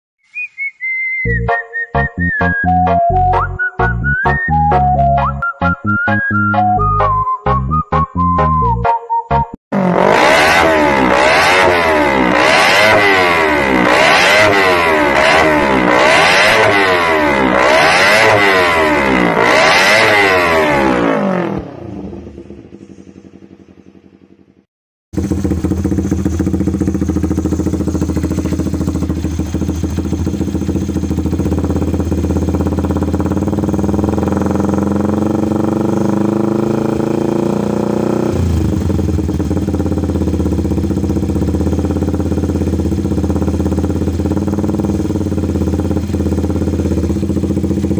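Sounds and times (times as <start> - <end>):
motorcycle engine revving: 9.7 - 47.9
motorcycle engine idling: 21.8 - 24.6, 25.2 - 47.9.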